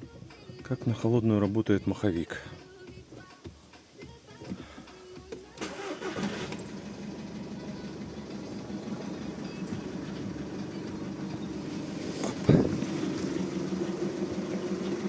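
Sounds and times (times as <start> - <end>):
diesel engine cranking and idling: 5.5 - 15.0.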